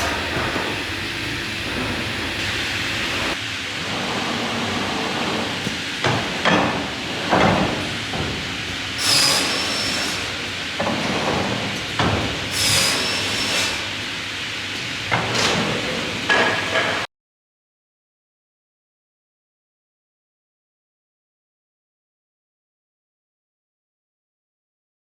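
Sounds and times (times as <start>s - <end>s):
crosscut saw machine noise: 0.0s - 8.2s, 8.8s - 11.5s, 12.5s - 14.0s.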